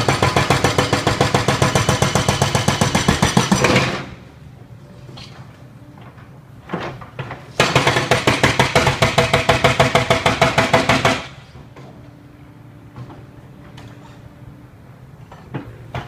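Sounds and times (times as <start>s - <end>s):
power tool hammering rapidly: 0.0s - 4.0s, 7.6s - 11.3s.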